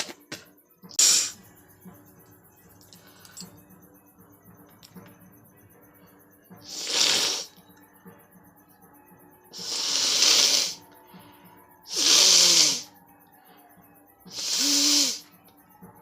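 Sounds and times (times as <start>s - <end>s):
person blowing nose: 1.0s - 1.4s, 6.7s - 7.5s, 11.9s - 12.8s, 14.3s - 15.2s.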